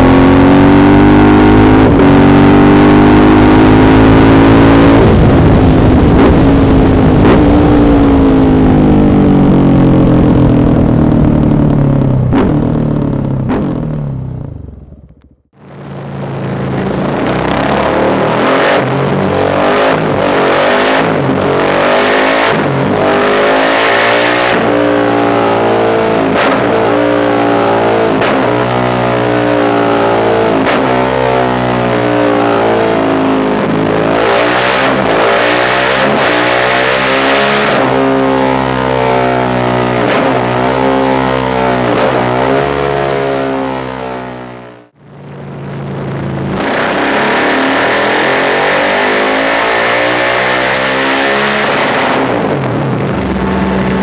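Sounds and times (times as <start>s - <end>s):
motorcycle engine revving: 0.0s - 54.0s
exhaust cracks: 4.6s - 23.6s, 44.9s - 54.0s.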